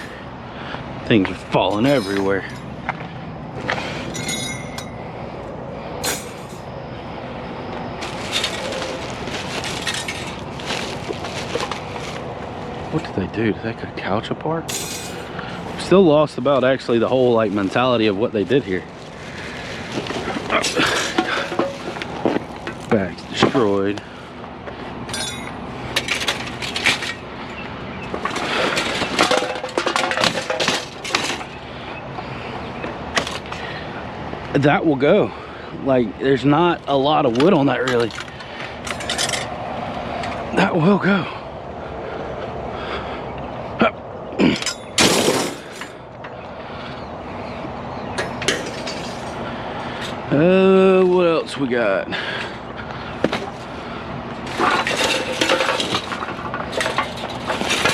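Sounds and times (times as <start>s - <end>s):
metal scrap clinking and rattling: 1.7s - 2.7s, 4.1s - 5.0s, 6.0s - 6.7s, 8.0s - 11.8s, 14.7s - 15.3s, 19.9s - 23.8s, 25.1s - 27.2s, 28.2s - 31.6s, 37.3s - 39.5s, 44.5s - 46.0s, 48.2s - 49.4s, 54.4s - 57.9s
bag rustling and cracking: 8.0s - 12.5s, 17.5s - 22.9s.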